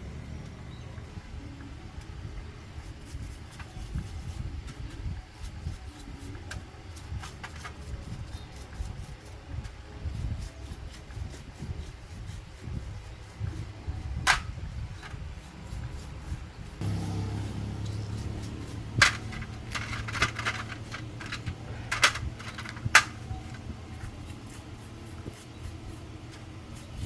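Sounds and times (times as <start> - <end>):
low engine hum: 0.0 - 3.0, 16.8 - 27.0
metal tools clicking and clinking: 17.9 - 24.0.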